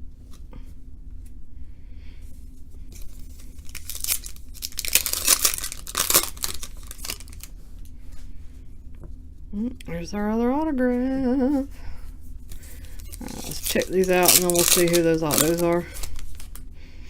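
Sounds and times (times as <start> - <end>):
wrapper tearing and crinkling: 3.0 - 7.5, 12.5 - 16.6.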